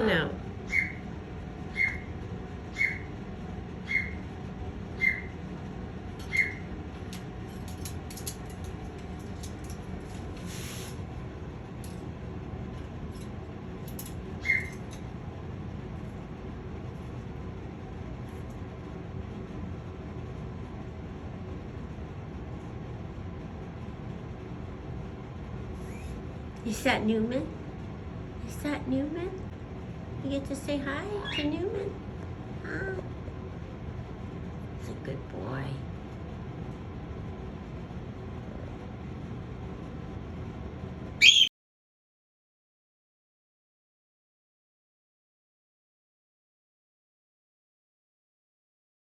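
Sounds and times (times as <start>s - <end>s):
parrot high peeps: 0.7s - 1.1s, 1.7s - 2.1s, 2.7s - 3.1s, 3.8s - 4.2s, 5.0s - 5.4s, 6.3s - 6.7s, 14.4s - 14.8s, 31.2s - 31.6s, 41.2s - 41.5s
brief hiss: 10.4s - 11.0s.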